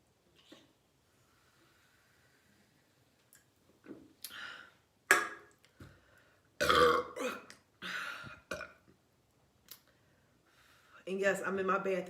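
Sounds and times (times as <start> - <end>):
woman burping: 6.6 - 8.8.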